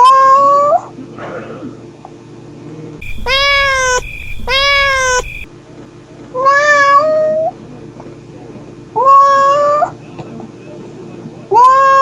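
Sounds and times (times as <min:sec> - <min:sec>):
cat meowing: 0:03.0 - 0:05.5.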